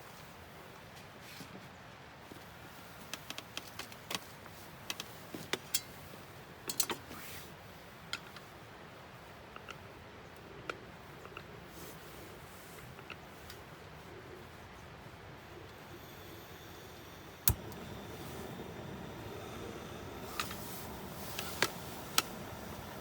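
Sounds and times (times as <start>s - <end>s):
faint steady hiss: 0.0s - 23.0s
sharp clicks and light knocks: 17.5s - 19.4s.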